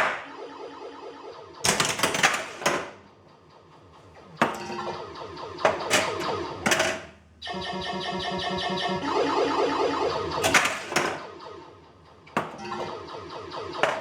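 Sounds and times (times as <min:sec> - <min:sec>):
electronic sound effects: 0:00.4 - 0:14.0
pinball machine clacks: 0:01.6 - 0:07.2, 0:10.3 - 0:11.4.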